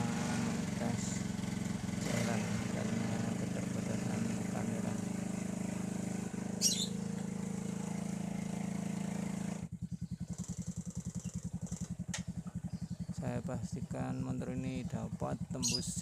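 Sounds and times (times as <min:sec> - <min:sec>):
motorcycle engine running: 0:00.0 - 0:16.0
high chirp: 0:06.6 - 0:07.2, 0:12.6 - 0:16.0.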